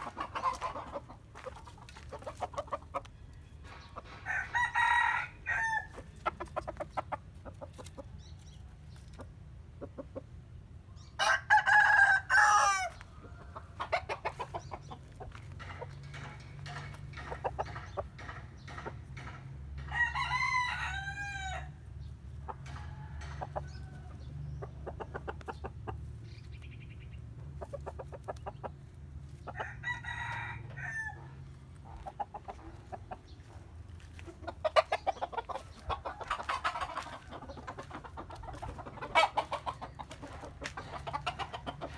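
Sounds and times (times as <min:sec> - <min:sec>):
chickens clucking: 0:00.0 - 0:41.9
rooster crowing: 0:04.2 - 0:06.0, 0:11.2 - 0:13.0, 0:19.9 - 0:21.8, 0:29.6 - 0:31.4.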